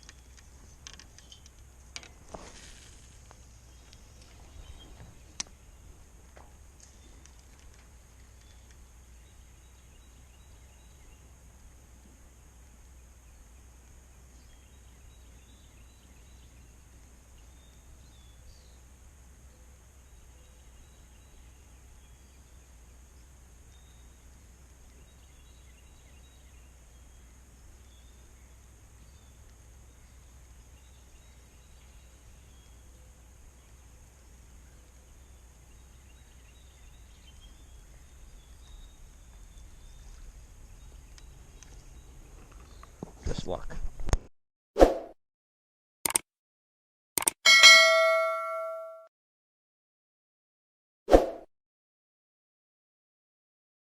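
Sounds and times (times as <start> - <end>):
low rumble and hiss: 0.0 - 43.9
faint distant bird chirps: 3.4 - 6.1, 6.8 - 43.0.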